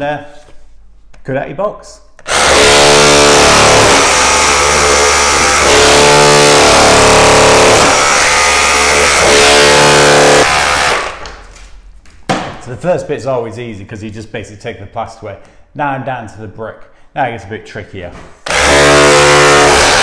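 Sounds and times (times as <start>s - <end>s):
rotary hammer chiselling plaster: 2.2s - 11.2s, 18.4s - 20.0s.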